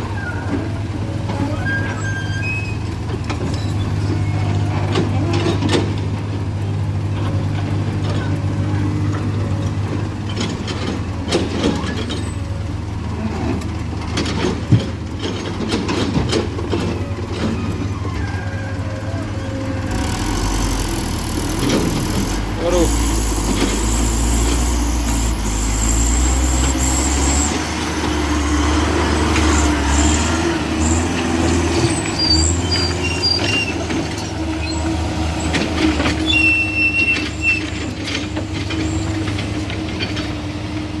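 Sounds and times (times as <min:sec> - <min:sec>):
diesel engine running: 0:00.0 - 0:41.0
knocks and clanks: 0:13.5 - 0:17.9.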